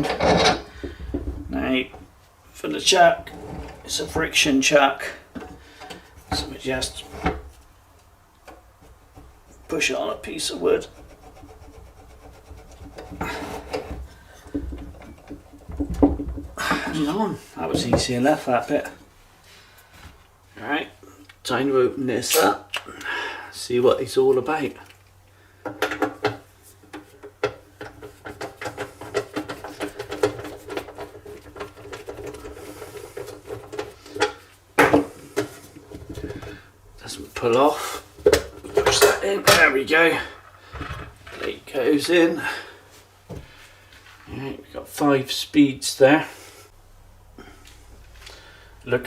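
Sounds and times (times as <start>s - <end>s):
plastic and metal parts rattling: 0.0s - 1.5s, 25.8s - 36.6s
wood and metal scraping: 0.0s - 7.8s, 8.5s - 19.0s, 25.7s - 42.8s.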